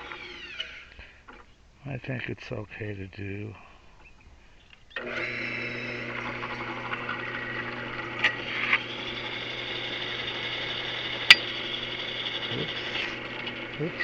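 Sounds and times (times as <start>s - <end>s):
drill press motor hum: 5.0s - 13.8s.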